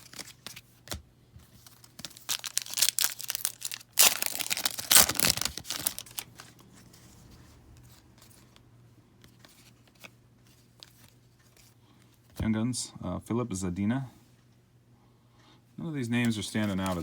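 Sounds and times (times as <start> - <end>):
faint card handling: 0.0 - 8.6, 9.2 - 12.4, 16.2 - 17.0
foil wrapper tearing and crinkling: 1.9 - 6.3.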